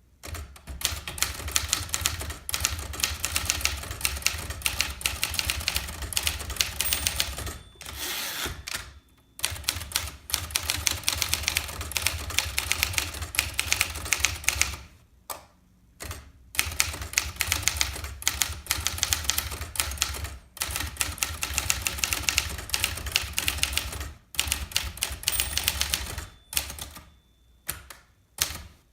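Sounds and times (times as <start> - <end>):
typewriter key strikes: 0.2 - 8.0, 24.6 - 27.1.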